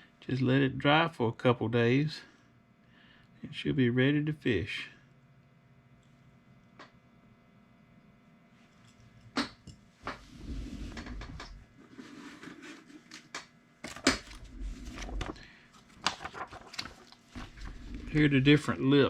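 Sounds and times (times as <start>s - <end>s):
rustling: 14.3s - 18.8s.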